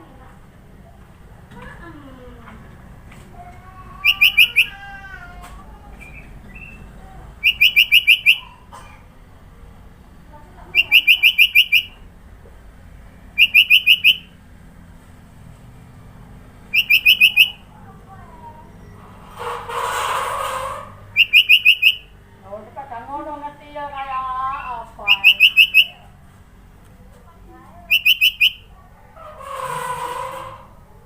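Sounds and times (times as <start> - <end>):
bird singing rapid high notes: 4.0 - 4.8, 6.0 - 8.5, 10.7 - 12.0, 13.3 - 14.3, 16.7 - 17.7, 21.2 - 22.2, 25.0 - 26.0, 27.9 - 28.7.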